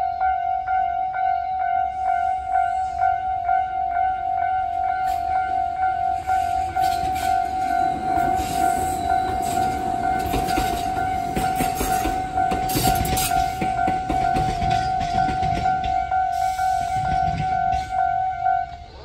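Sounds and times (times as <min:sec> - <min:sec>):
level crossing alarm dinging: 0:00.0 - 0:19.0
train wheels rumbling and clicking: 0:04.6 - 0:19.0.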